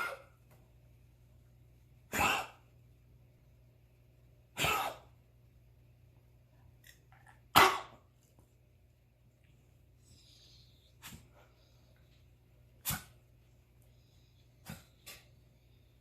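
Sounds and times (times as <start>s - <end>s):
person coughing: 4.6s - 5.1s.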